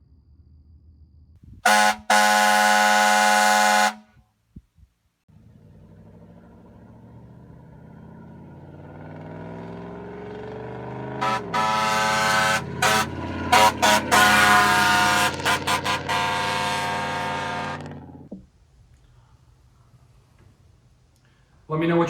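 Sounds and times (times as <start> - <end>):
air horn blasts: 1.6 - 4.2, 10.7 - 18.0.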